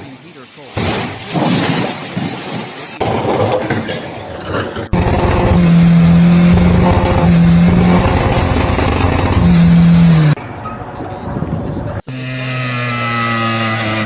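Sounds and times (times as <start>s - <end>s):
loud engine running hard: 4.9s - 14.0s.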